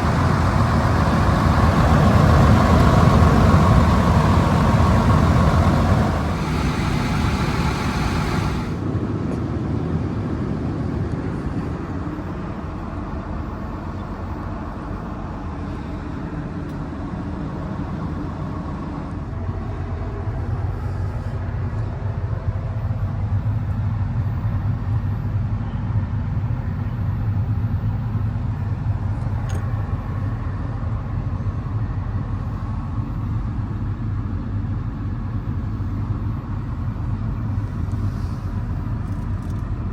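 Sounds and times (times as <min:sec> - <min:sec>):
loud hiss: 0:00.0 - 0:08.8
excavator diesel engine running: 0:00.0 - 0:08.9.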